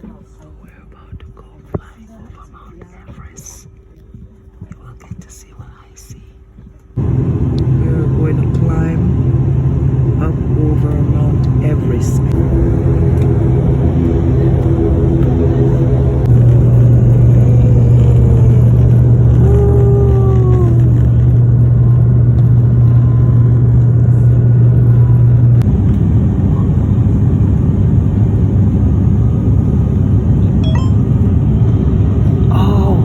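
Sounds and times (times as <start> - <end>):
aircraft engine and propeller drone: 7.0 - 33.0.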